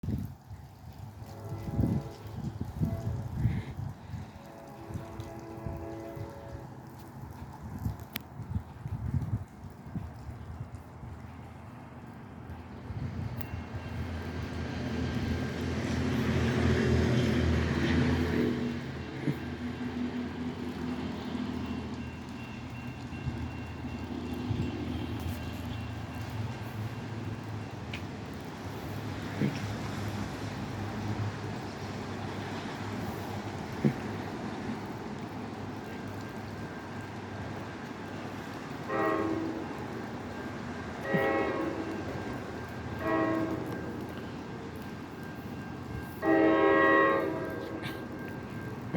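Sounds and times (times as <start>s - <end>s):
diesel train passing: 0.0s - 48.9s
rain hissing: 0.0s - 48.9s
locomotive air horn blasts: 1.2s - 7.1s, 15.9s - 23.6s, 38.3s - 44.3s, 45.2s - 48.9s.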